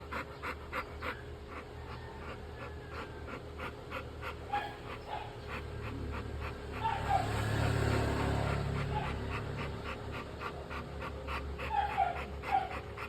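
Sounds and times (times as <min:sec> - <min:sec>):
dog panting hard: 0:00.0 - 0:13.0.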